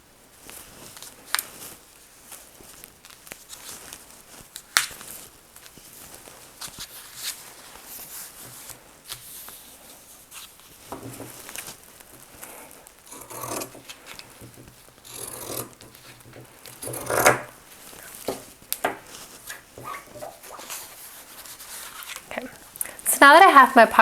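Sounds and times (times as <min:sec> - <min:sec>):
cloth rustling: 0:00.2 - 0:24.0
shears cutting fabric: 0:13.0 - 0:18.4.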